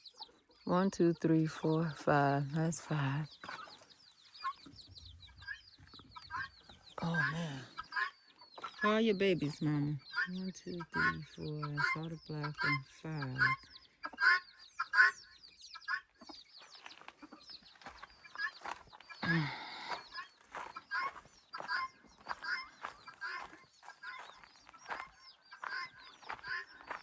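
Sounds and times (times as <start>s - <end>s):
hens clucking: 0.0s - 27.0s
loud long hen call: 19.2s - 27.0s.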